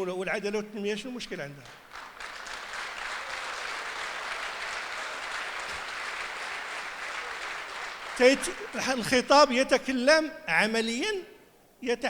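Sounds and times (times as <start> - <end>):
audience applauding: 1.6 - 9.4
person speaking: 8.2 - 12.0.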